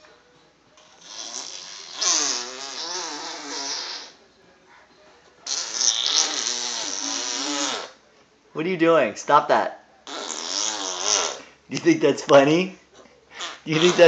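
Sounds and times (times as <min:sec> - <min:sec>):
person imitating fart noises: 0:00.8 - 0:04.2, 0:05.4 - 0:08.0, 0:10.0 - 0:11.5, 0:13.4 - 0:14.0.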